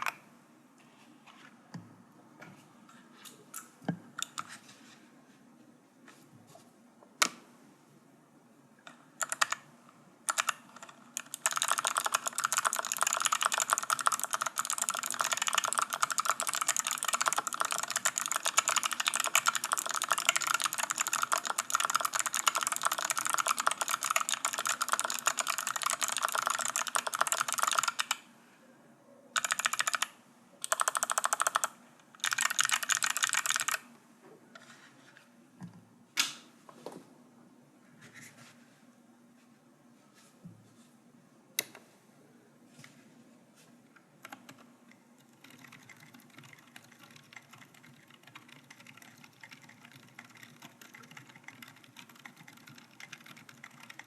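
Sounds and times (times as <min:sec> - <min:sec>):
clicky keyboard typing: 0:09.2 - 0:09.6, 0:10.3 - 0:28.2, 0:29.4 - 0:33.8, 0:44.2 - 0:54.0.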